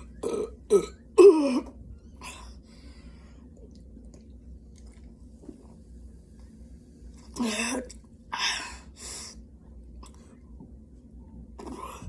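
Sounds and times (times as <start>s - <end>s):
faint breath: 2.2s - 3.6s.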